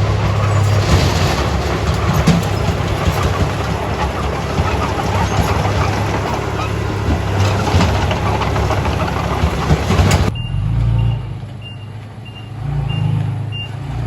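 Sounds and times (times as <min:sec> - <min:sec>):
diesel engine rumble: 0:00.0 - 0:14.0
reversing alarm beeping: 0:10.3 - 0:13.7.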